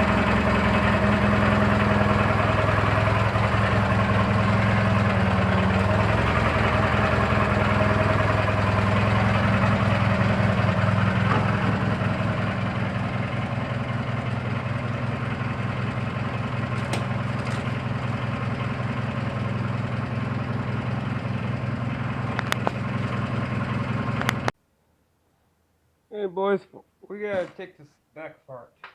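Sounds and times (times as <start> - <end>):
engine running with knocking chatter: 0.0 - 24.5.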